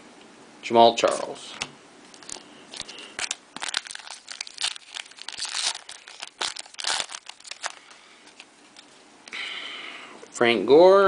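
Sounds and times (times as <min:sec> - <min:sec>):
cards and foil wrapper rustling: 0:02.1 - 0:09.0.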